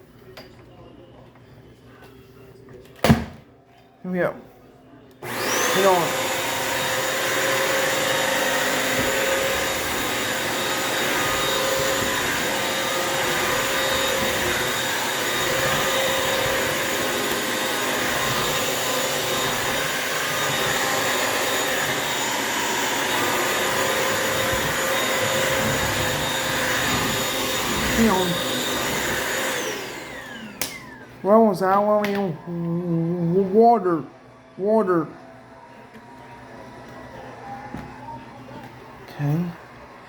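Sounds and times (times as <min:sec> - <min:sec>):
vacuum mop motor whirring: 0:05.2 - 0:32.8.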